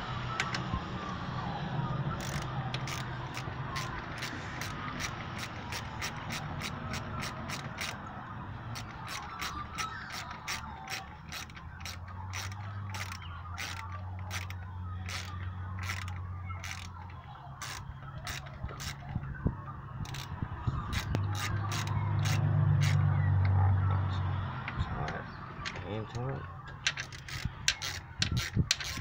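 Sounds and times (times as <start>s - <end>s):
ratchet wrench clicking: 2.2s - 8.1s, 8.7s - 19.0s, 20.0s - 23.1s, 26.8s - 29.0s.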